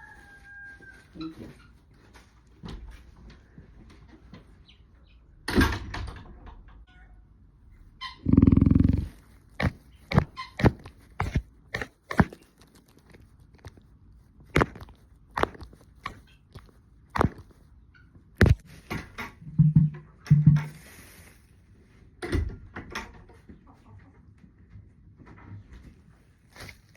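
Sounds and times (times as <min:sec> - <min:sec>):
short low hums: 0:08.2 - 0:09.3
sharp taps and knocks: 0:08.9 - 0:13.8, 0:14.5 - 0:17.6, 0:18.4 - 0:20.8.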